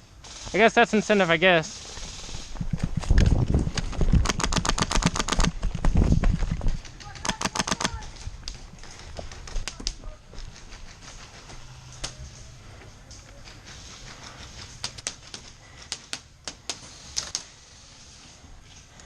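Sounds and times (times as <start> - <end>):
airsoft guns firing: 4.2 - 5.6, 7.0 - 8.1.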